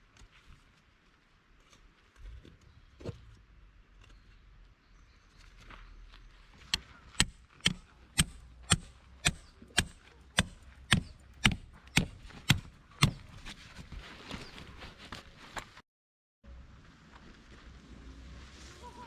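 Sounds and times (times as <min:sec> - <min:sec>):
hand tool striking blows: 0:06.7 - 0:13.3.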